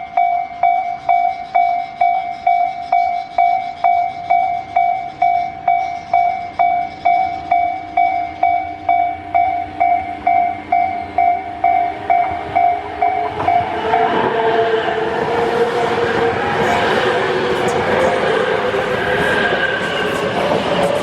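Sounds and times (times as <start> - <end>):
train running noise: 0.0 - 21.0
train motor whine: 8.1 - 21.0.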